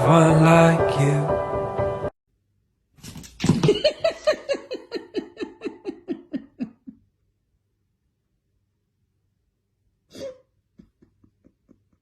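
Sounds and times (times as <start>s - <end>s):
high voice laughing: 3.7s - 7.1s.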